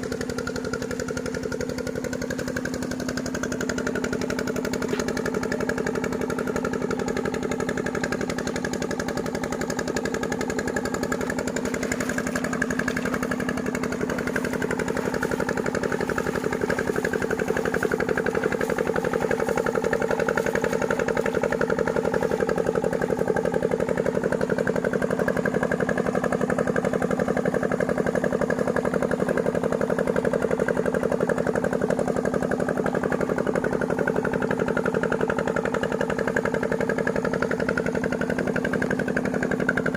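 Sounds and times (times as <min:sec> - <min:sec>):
engine chugging steadily: 0:00.0 - 0:39.9.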